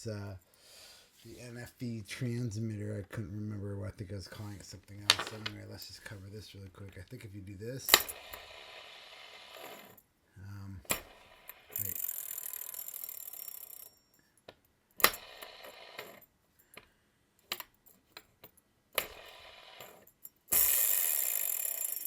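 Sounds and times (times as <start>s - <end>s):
metallic coin clicks: 19.8s - 22.0s.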